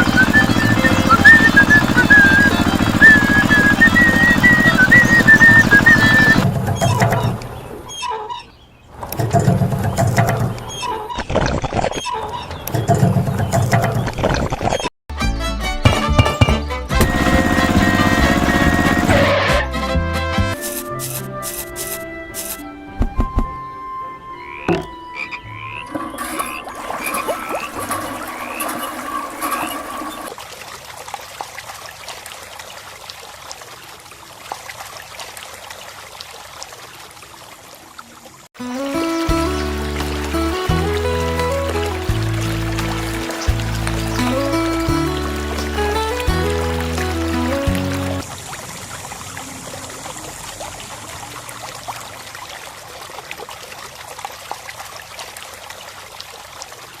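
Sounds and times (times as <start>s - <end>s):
water trickling: 25.5s - 57.0s
water drips and splashes: 25.8s - 57.0s.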